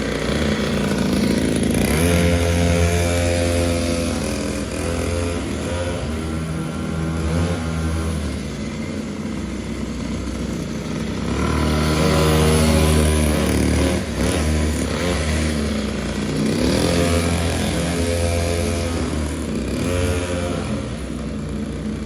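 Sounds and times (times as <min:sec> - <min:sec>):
mini motorcycle engine revving: 0:00.0 - 0:22.0.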